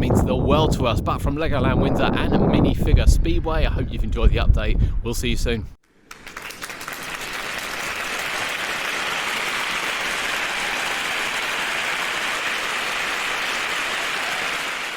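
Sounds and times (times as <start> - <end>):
crowd applauding: 5.9 - 14.9.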